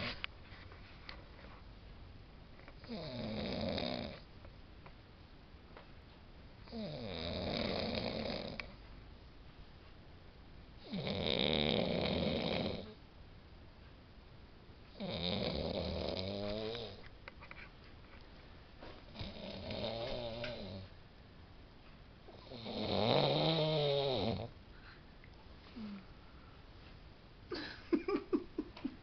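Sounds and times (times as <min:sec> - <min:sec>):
person snoring: 0:02.8 - 0:04.2, 0:06.7 - 0:08.6, 0:10.8 - 0:13.0, 0:15.0 - 0:17.0, 0:19.2 - 0:20.9, 0:22.4 - 0:24.5.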